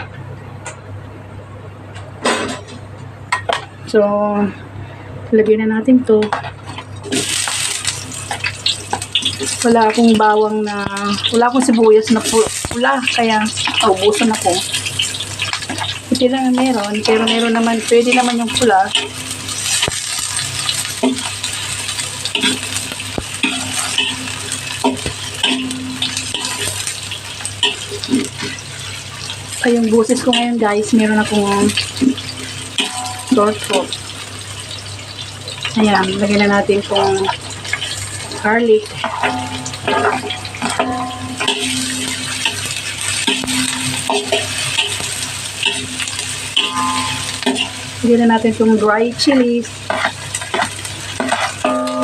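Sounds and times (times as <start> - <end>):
onion sizzling in a pan: 6.4 - 52.0
spatula scraping pan: 16.6 - 27.0, 49.8 - 51.8
utensil scraping a pan: 49.9 - 51.6.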